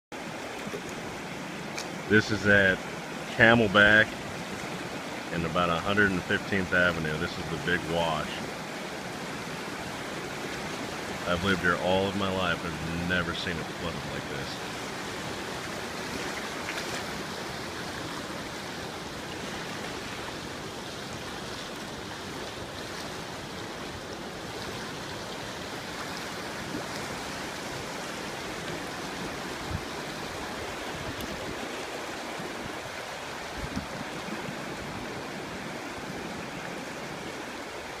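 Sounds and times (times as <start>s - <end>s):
floodwater rushing: 0.1s - 38.0s.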